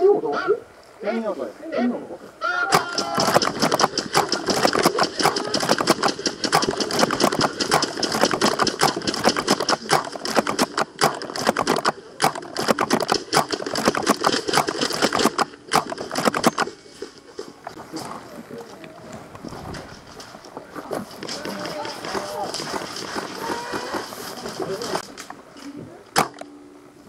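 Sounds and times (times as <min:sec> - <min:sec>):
footsteps crunching on dry ground: 0:16.7 - 0:25.1.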